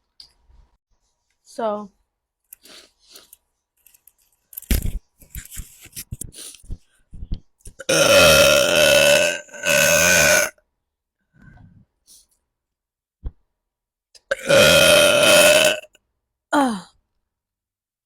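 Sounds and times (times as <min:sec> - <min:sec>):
woman burping: 0:07.8 - 0:10.5, 0:14.3 - 0:15.9.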